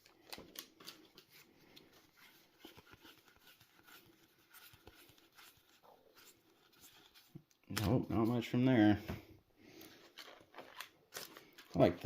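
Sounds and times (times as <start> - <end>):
cards being handled: 0.0 - 8.5, 9.8 - 12.0.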